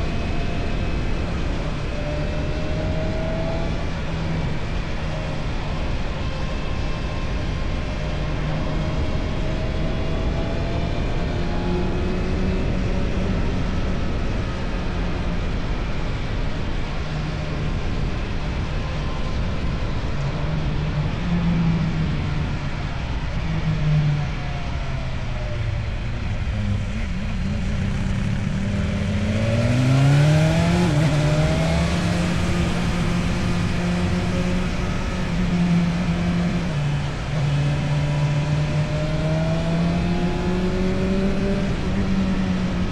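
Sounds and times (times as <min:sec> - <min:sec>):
motorcycle engine running: 0:25.4 - 0:42.9.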